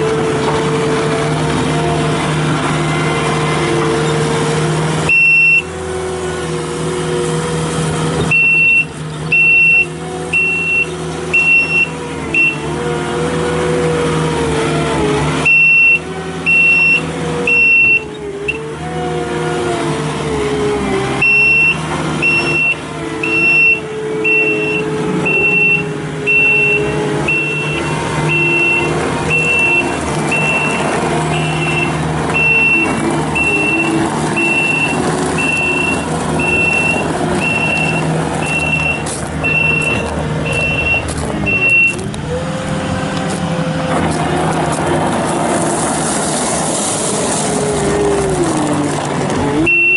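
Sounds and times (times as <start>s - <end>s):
diesel engine running: 0.0s - 49.9s
reversing alarm beeping: 5.1s - 5.8s, 8.3s - 12.7s, 15.4s - 18.7s, 21.2s - 42.1s, 49.6s - 49.9s.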